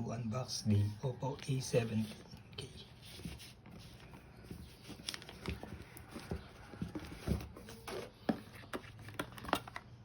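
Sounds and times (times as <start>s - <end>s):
cardboard box being handled: 2.9s - 9.3s.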